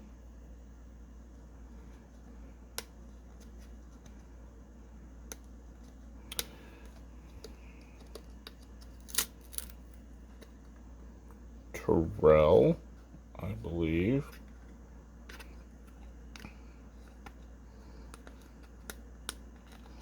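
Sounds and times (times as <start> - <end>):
low steady hum: 0.0 - 20.0
card being torn open: 8.8 - 9.9.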